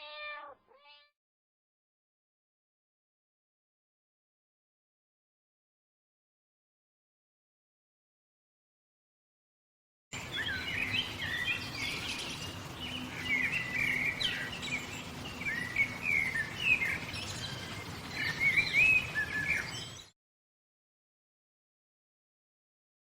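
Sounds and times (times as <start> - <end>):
faint steady background noise: 10.2 - 20.1
songbirds chirping and singing: 10.2 - 20.1.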